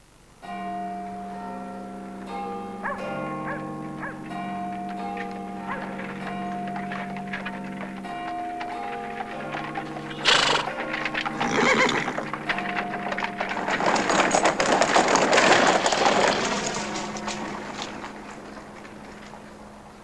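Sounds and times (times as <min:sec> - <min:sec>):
hooves clip-clopping: 0:00.7 - 0:20.0
dense clatter: 0:04.3 - 0:20.0
horse whinnying: 0:10.1 - 0:12.4.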